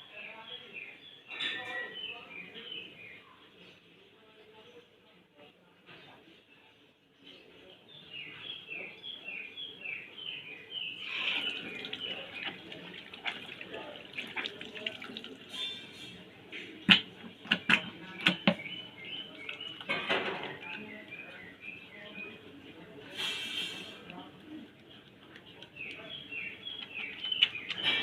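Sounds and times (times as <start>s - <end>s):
tap water running into sink: 11.1s - 15.6s.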